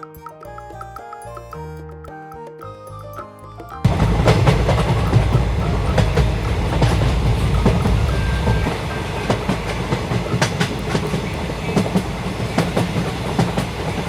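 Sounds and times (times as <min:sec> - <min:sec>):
low train rumble: 0:03.9 - 0:14.0
wheels clicking over rails: 0:03.9 - 0:14.0.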